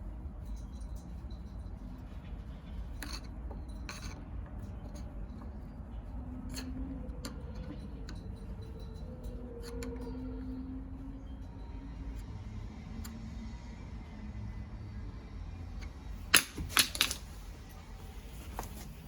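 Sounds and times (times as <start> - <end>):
steady low hum: 0.0 - 19.0
screwdriver clicking on metal: 16.3 - 17.3.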